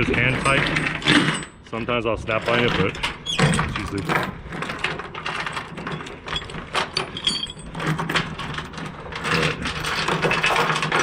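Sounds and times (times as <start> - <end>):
metal hardware clinking: 2.4 - 11.0.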